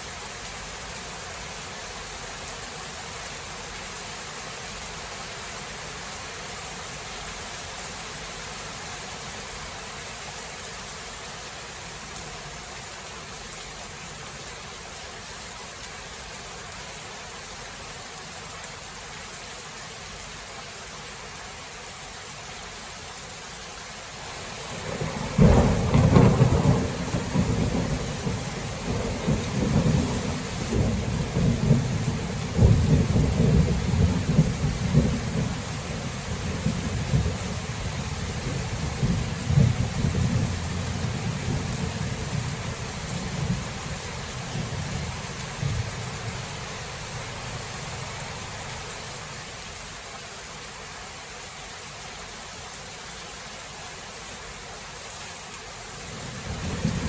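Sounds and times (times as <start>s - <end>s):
steady rain falling: 0.0s - 57.0s
rolling thunder: 24.6s - 48.0s, 56.2s - 57.0s.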